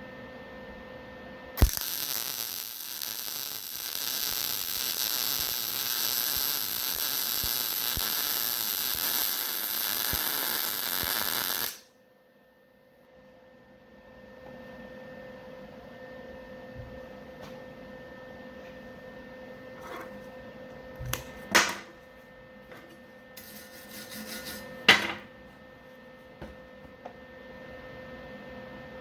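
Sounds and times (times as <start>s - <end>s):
welder click: 1.6s - 5.2s
welding arc crackling sizzle: 1.6s - 11.9s.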